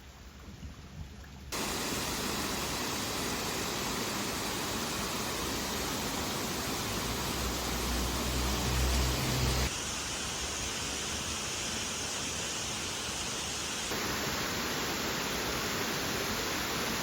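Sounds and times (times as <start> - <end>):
rushing water: 0.0 - 17.0.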